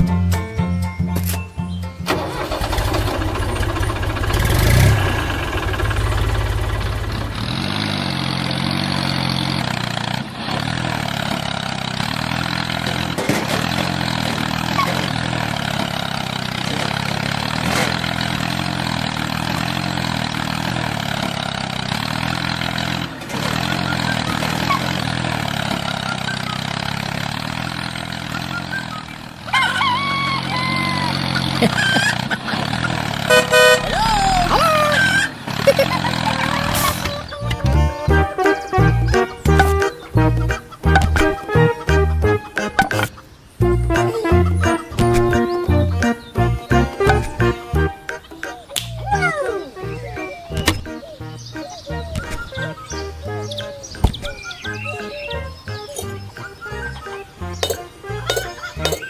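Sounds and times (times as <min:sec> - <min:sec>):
warbling call: 0:28.4 - 0:32.2, 0:48.1 - 0:59.0.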